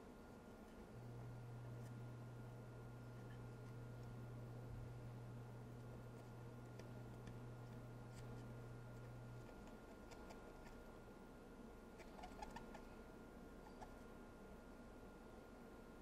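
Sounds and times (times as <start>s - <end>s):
low steady hum: 0.0s - 16.0s
light ticks and scratching: 5.8s - 10.9s.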